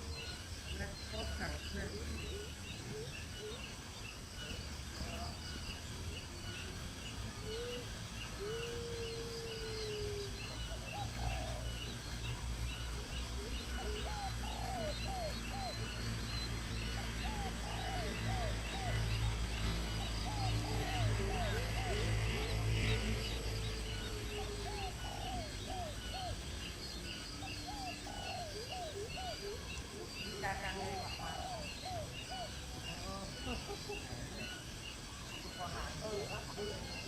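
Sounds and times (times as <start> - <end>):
birds chirping: 0.0 - 37.0
long low bird call: 0.0 - 37.0
steady low hum: 0.0 - 37.0.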